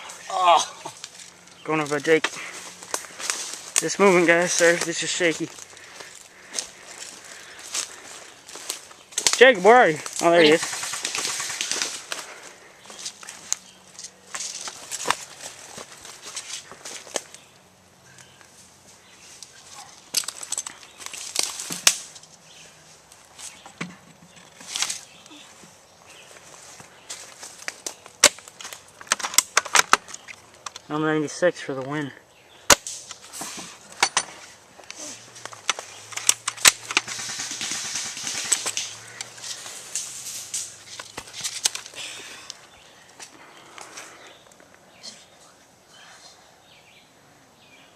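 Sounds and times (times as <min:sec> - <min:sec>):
rustling hiss of movement: 0:00.0 - 0:29.1, 0:32.9 - 0:46.8
footsteps crunching through dry leaves: 0:00.1 - 0:17.6, 0:20.8 - 0:23.6, 0:24.6 - 0:29.0, 0:38.4 - 0:42.0
twigs snapping: 0:00.8 - 0:09.4, 0:10.0 - 0:17.5, 0:19.4 - 0:22.4, 0:27.1 - 0:30.9, 0:34.8 - 0:44.8
airsoft gun shots: 0:36.6 - 0:38.9.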